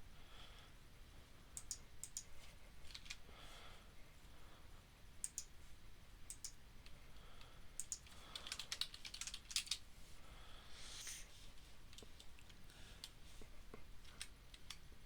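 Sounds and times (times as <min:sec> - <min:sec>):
computer keyboard typing: 0:07.8 - 0:09.8.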